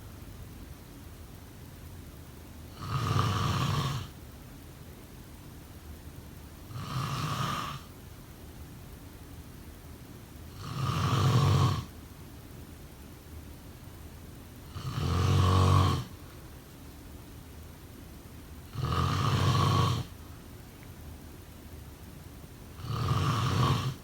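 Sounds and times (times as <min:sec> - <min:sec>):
person snoring: 0:02.8 - 0:04.1, 0:06.7 - 0:07.9, 0:10.6 - 0:11.9, 0:14.7 - 0:16.2, 0:18.7 - 0:20.1, 0:22.8 - 0:24.0.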